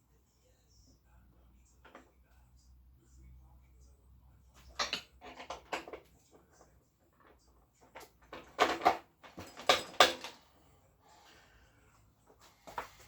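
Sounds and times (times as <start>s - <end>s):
clunks and scrapes of parts and tools: 4.6s - 10.6s, 12.3s - 13.0s.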